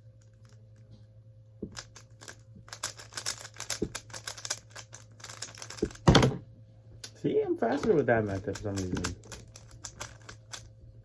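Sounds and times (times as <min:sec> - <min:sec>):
puzzle cube plastic clicks: 0:01.7 - 0:06.0, 0:07.8 - 0:10.7.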